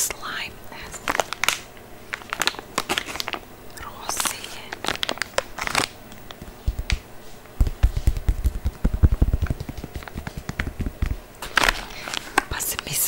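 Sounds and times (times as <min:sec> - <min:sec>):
fingers tapping on foam: 0:06.3 - 0:07.0, 0:07.6 - 0:11.2.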